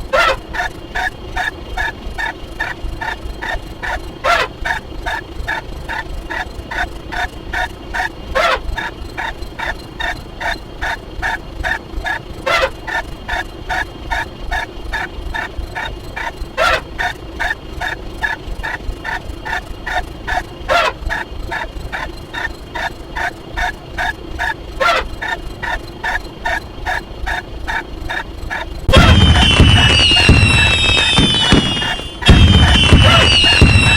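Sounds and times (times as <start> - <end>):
sweeping squawk-like call: 0.1 - 6.9, 7.6 - 33.9
short pitched pulses: 28.9 - 33.9.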